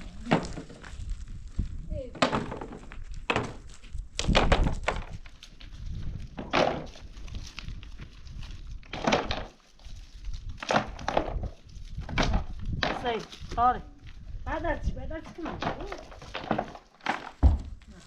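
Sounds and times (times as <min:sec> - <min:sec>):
dull thunks: 0:15.3 - 0:17.9.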